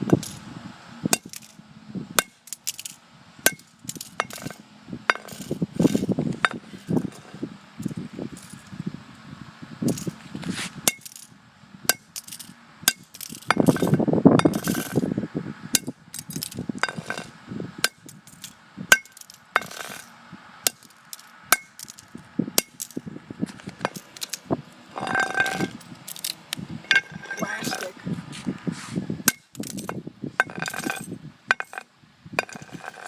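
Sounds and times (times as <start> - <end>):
rough clatter: 1.1 - 1.6, 2.2 - 8.8, 9.9 - 11.3, 11.9 - 15.1, 15.8 - 28.0, 29.2 - 33.0
sharp hits with ringing clink: 1.1 - 1.6, 2.2 - 6.6, 10.8 - 11.3, 11.9 - 15.0, 15.8 - 20.1, 20.7 - 23.1.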